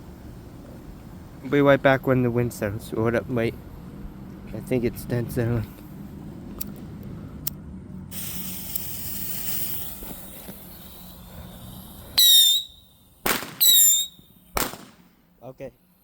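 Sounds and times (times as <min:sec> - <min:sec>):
lit fuse hissing: 0:08.1 - 0:14.8
firework crack: 0:08.1 - 0:15.4
whistling fireworks: 0:08.2 - 0:15.1.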